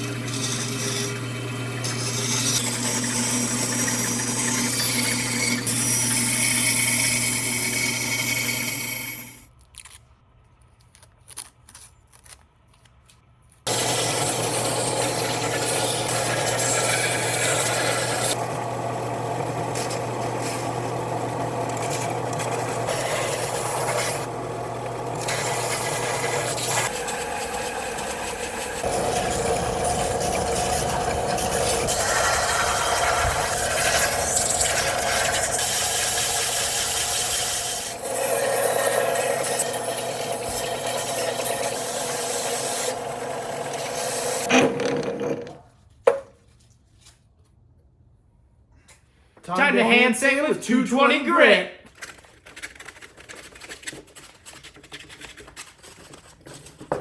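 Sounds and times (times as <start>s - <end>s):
power sander rubbing wood: 0.0s - 9.3s, 13.7s - 44.6s.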